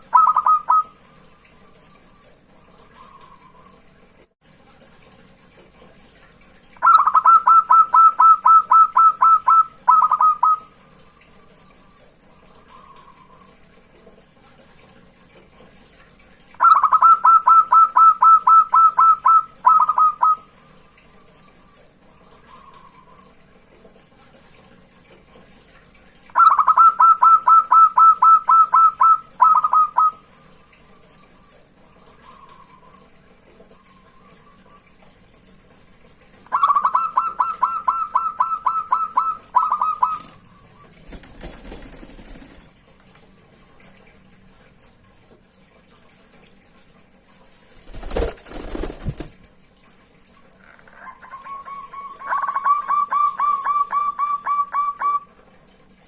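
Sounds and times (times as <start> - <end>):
dove cooing: 0.0 - 0.9, 6.8 - 10.6, 16.6 - 20.4, 26.4 - 30.2, 36.5 - 40.5, 50.7 - 55.3.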